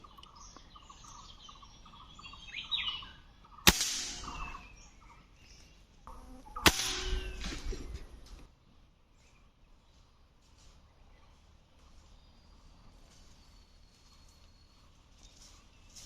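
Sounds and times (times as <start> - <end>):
small birds chirping: 0.0 - 16.0
sharp gunshot with ringing tail: 3.7 - 4.7, 6.6 - 7.7.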